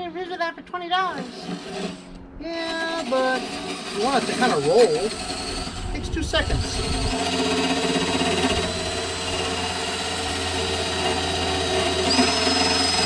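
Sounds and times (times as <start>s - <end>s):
small motor humming: 1.2s - 13.0s
thin high whine: 1.2s - 13.0s.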